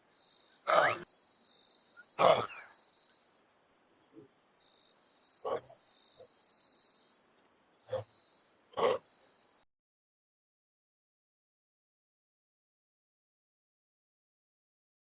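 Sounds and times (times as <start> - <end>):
kangaroo harsh calls: 0.6 - 1.1, 2.2 - 2.8, 5.4 - 5.8, 7.9 - 8.1, 8.8 - 9.1.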